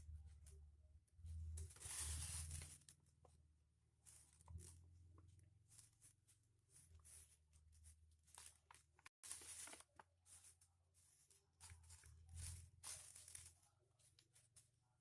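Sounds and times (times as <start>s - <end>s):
foil paper crinkling: 1.7s - 2.9s, 5.6s - 15.0s.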